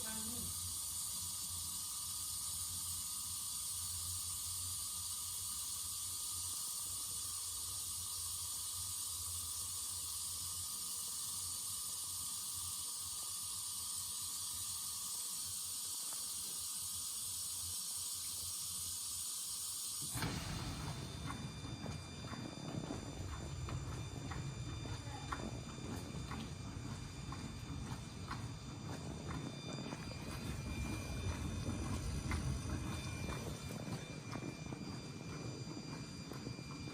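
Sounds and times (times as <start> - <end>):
dishwasher water spray hiss: 0.0 - 22.5
low hum: 20.2 - 36.9.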